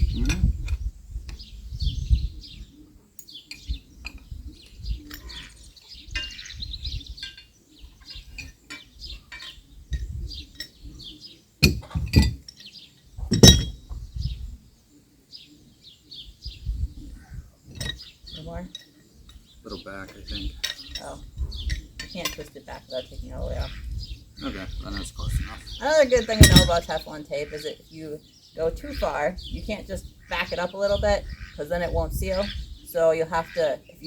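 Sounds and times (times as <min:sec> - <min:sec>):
birds chirping: 0:00.0 - 0:34.0
metal pipe fittings clinking: 0:06.1 - 0:06.5, 0:07.2 - 0:07.5, 0:13.3 - 0:13.8, 0:26.3 - 0:26.9
sharp metal clanks: 0:13.3 - 0:13.8, 0:26.3 - 0:27.0.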